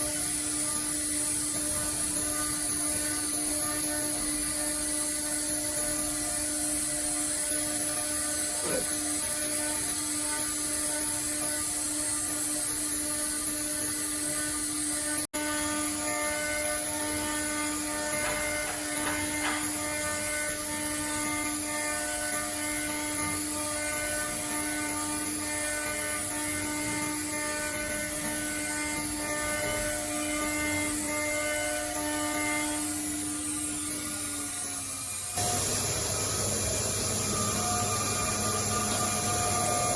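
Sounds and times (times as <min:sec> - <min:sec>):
router spindle whine: 0:00.0 - 0:39.9
machining hiss: 0:34.6 - 0:39.9.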